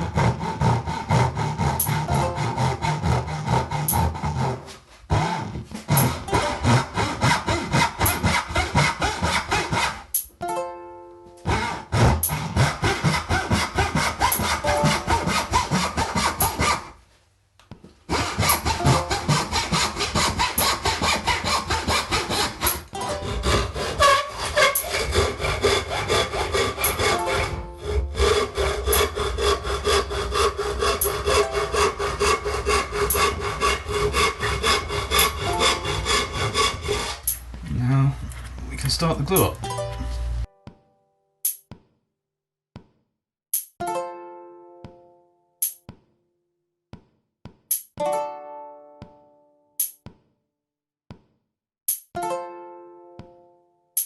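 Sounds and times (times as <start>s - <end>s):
hand saw cutting wood: 0.0s - 10.3s, 11.4s - 17.0s, 18.1s - 40.3s.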